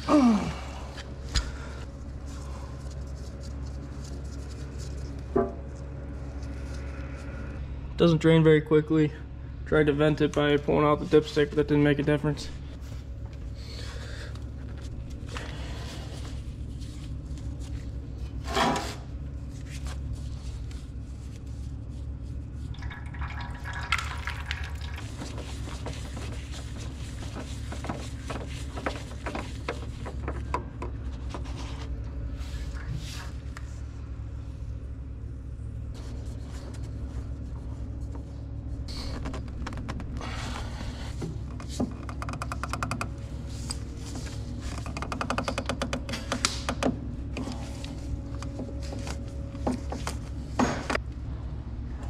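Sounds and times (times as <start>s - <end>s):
steady low hum: 0.0s - 52.0s
oil trickling into a pan: 22.7s - 25.5s.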